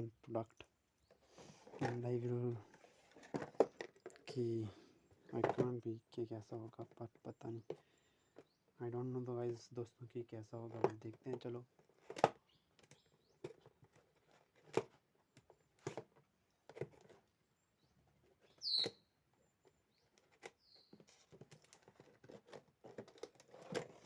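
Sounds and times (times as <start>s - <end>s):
small ticks and rustles: 10.6s - 24.0s.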